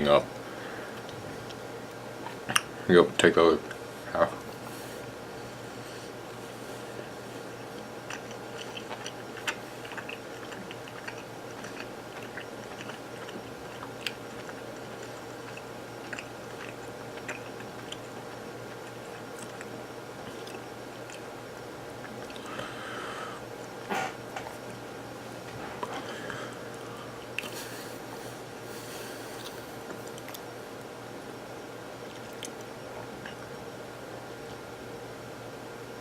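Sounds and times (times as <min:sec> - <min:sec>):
background hum: 0:00.0 - 0:36.0
person chewing: 0:05.6 - 0:23.0, 0:25.8 - 0:30.5, 0:32.1 - 0:33.5.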